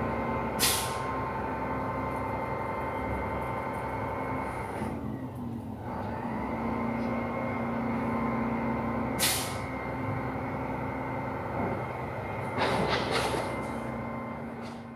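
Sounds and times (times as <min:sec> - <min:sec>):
truck engine running: 0:00.0 - 0:14.9
air brake hiss: 0:00.6 - 0:01.1, 0:09.2 - 0:09.7.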